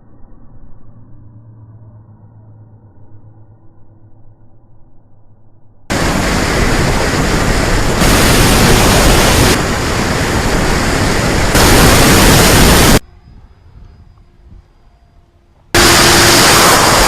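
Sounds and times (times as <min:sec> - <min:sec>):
wind rushing over microphone: 0:05.9 - 0:13.5.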